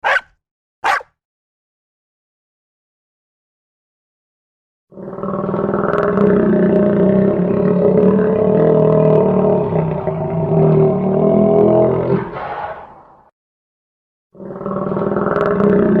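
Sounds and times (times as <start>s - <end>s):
long droning animal call: 4.9s - 12.2s.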